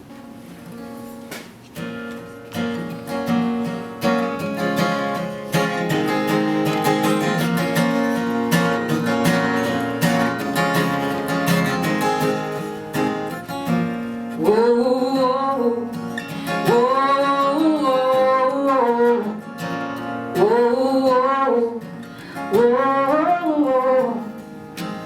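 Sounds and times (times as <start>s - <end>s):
acoustic guitar strumming: 0.0s - 25.0s
person singing: 14.4s - 19.5s, 20.3s - 24.4s.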